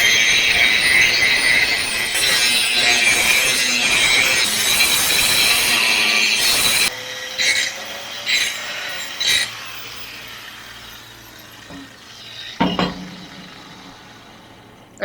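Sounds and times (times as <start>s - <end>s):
power tool motor winding down: 4.1s - 15.0s
knock: 12.6s - 14.1s.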